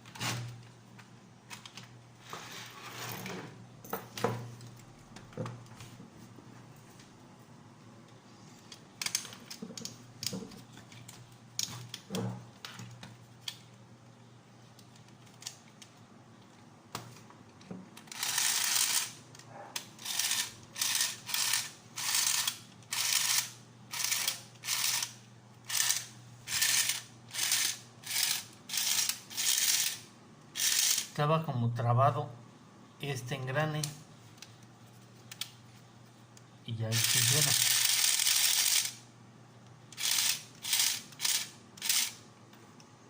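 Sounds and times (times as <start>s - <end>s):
toy motor ratcheting clatter: 18.1s - 19.2s, 20.0s - 31.2s, 36.9s - 39.0s, 39.9s - 42.2s.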